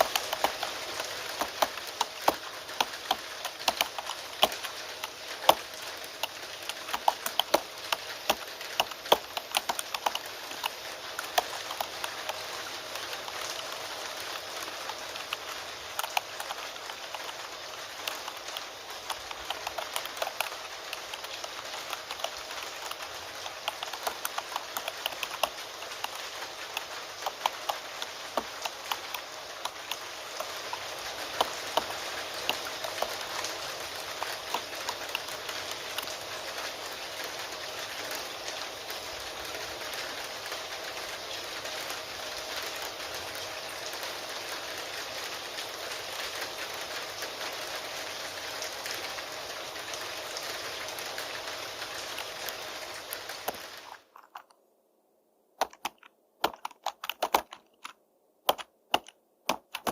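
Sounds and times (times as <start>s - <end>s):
keyboard typing: 0.0s - 36.2s, 55.6s - 59.9s
rain hiss: 0.0s - 54.5s.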